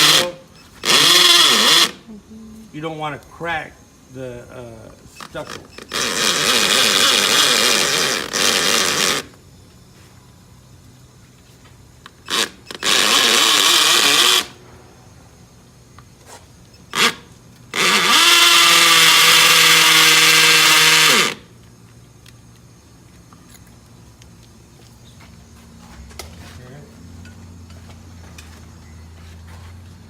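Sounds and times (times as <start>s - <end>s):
electric drill boring into wall: 0.0s - 2.0s, 5.2s - 9.4s, 12.1s - 14.6s, 16.8s - 21.5s.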